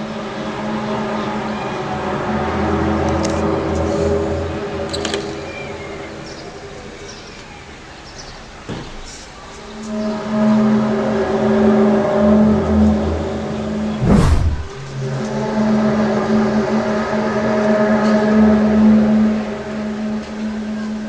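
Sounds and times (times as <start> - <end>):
low horn-like drone: 9.8 - 21.0
brief loud rushing sound: 14.0 - 15.1.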